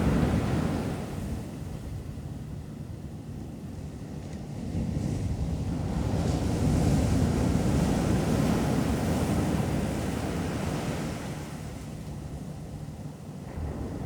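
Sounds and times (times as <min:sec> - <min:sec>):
wind rumbling on microphone: 0:13.4 - 0:14.0.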